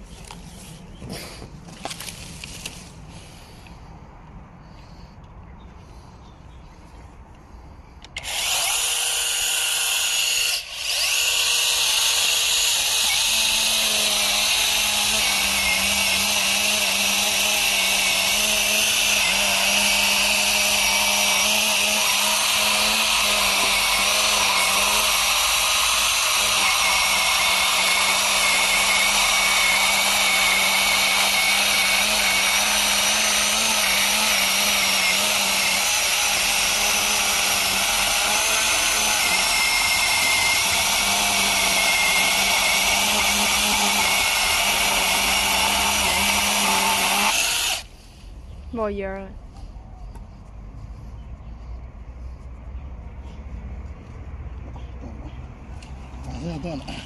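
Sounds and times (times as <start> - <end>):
mini chainsaw cutting wood: 8.1 - 47.9.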